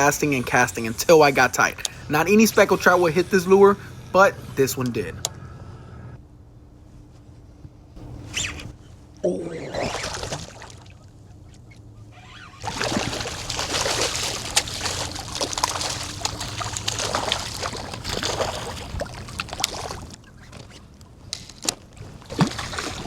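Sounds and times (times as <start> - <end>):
water splashing and sloshing: 8.0 - 23.0.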